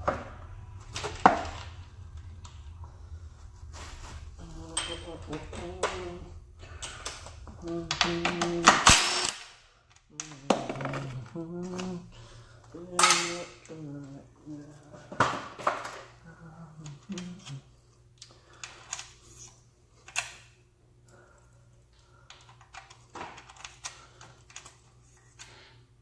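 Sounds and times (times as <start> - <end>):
low mumbling voice: 4.2 - 8.9, 10.1 - 15.5, 16.2 - 17.7
steel parts clicking and clinking: 12.7 - 13.9.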